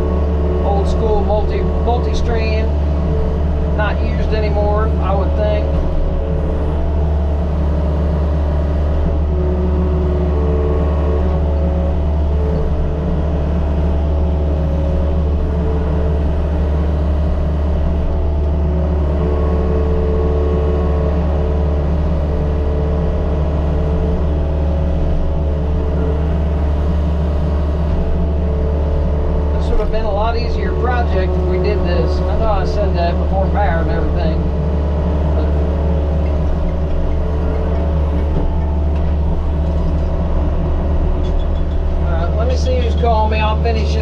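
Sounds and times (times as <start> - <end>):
diesel engine running: 0.0 - 44.0
hydraulics whining: 0.0 - 44.0.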